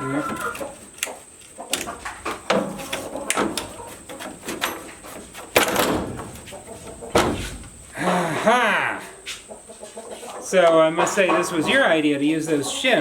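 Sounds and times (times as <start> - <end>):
metallic clicks and knocks: 0.4 - 7.8.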